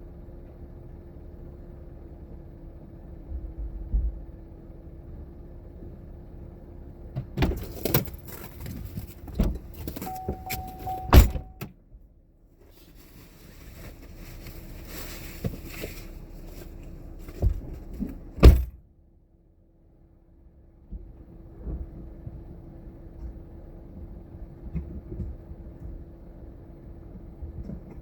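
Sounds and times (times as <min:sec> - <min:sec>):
gear knocking and rattling: 0:07.2 - 0:11.6, 0:12.7 - 0:18.8.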